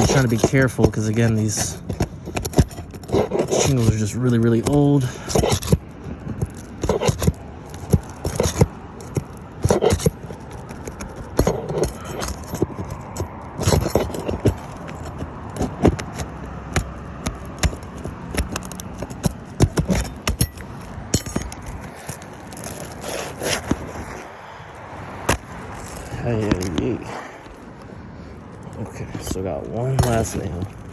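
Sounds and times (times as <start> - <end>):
metal tool clinking and scraping: 0.0 - 5.8, 11.4 - 16.3, 18.6 - 24.0, 29.2 - 30.8
shingles scraping and crackling: 0.0 - 30.9.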